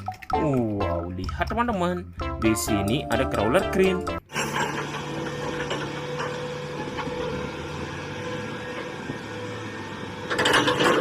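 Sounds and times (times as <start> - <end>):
heavy vehicle engine humming: 4.3 - 11.0.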